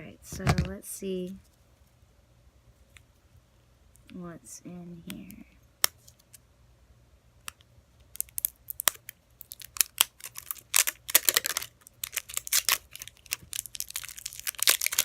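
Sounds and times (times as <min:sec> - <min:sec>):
plastic packaging crinkling and tearing: 0:08.1 - 0:15.0.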